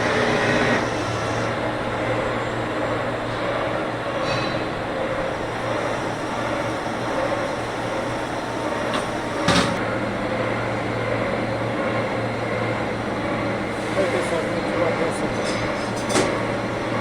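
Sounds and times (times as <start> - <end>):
lathe machine drone: 0.0 - 17.0.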